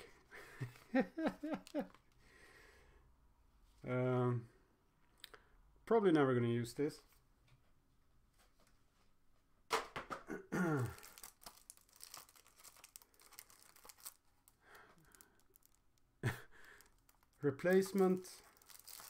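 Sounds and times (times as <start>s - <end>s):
packaging crinkling and tearing: 10.8s - 19.0s.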